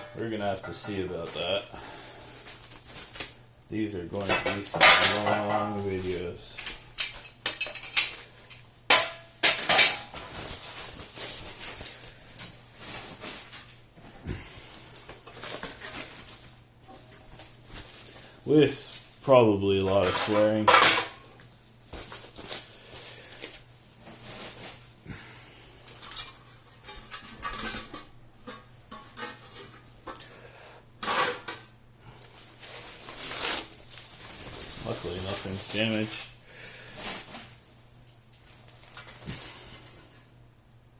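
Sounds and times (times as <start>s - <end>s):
packaging rustling: 10.1s - 13.8s, 14.6s - 18.8s, 32.3s - 37.6s.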